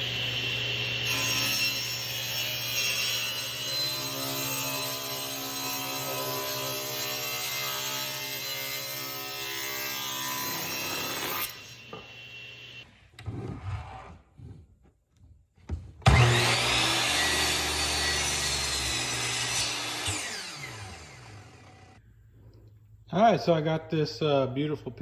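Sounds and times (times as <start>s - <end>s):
woodworking machine running: 16.0s - 22.0s.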